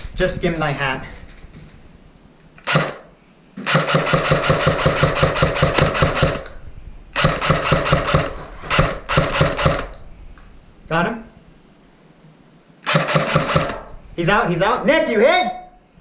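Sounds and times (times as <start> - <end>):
airsoft gun firing full-auto: 2.6 - 6.6, 7.2 - 10.0, 12.8 - 13.9.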